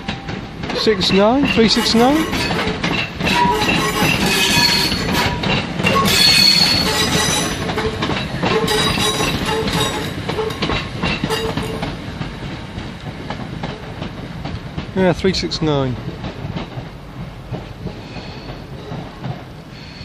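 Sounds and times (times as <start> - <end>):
train wheels clicking over rail joints: 0.0 - 20.0
wheel squeal: 1.1 - 10.6.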